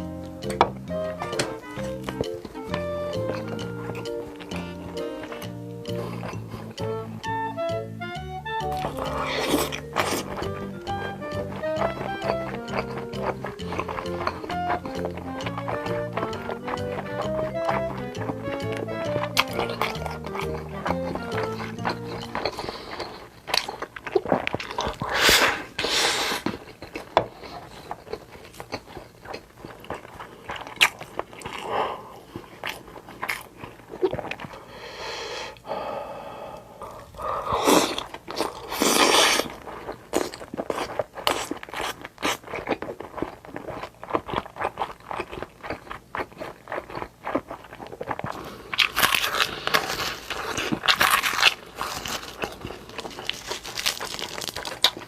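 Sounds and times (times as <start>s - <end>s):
chewing and crunching food: 0.0s - 35.9s, 36.5s - 55.0s.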